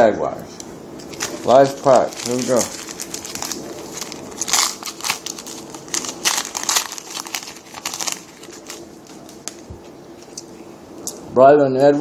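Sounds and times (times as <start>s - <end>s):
foil wrapper tearing and crinkling: 1.0s - 10.4s.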